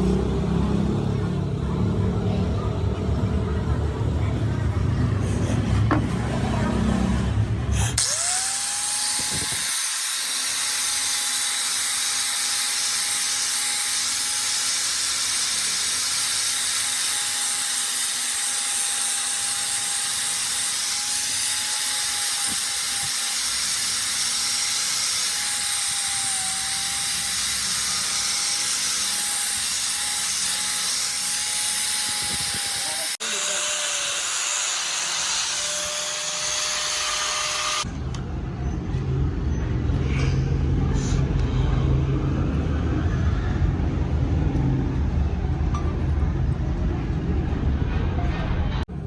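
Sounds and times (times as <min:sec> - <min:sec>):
electric grinder grinding knife: 0:08.0 - 0:37.9.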